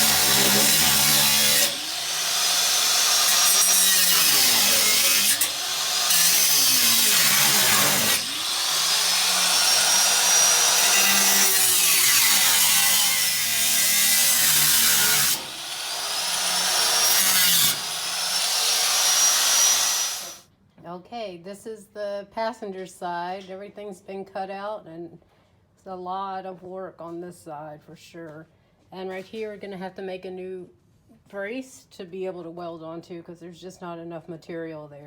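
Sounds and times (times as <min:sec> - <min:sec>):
power tool cutting sheet metal: 0:00.0 - 0:20.4.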